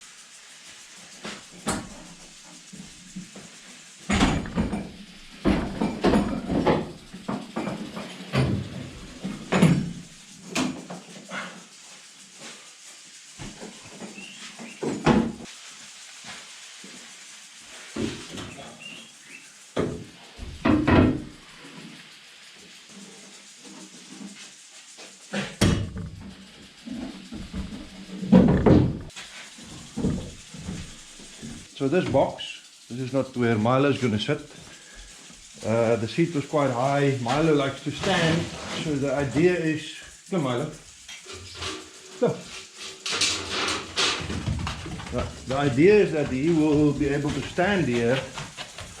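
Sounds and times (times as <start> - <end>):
irregular knocks and thumps: 4.1 - 11.0, 19.8 - 21.4, 25.6 - 32.2, 44.1 - 49.0.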